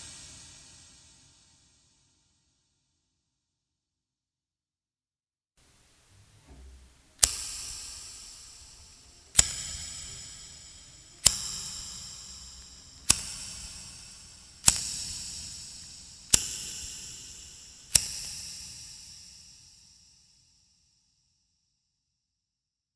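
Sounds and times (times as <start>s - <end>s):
lighter metal case clinking: 6.7s - 18.3s.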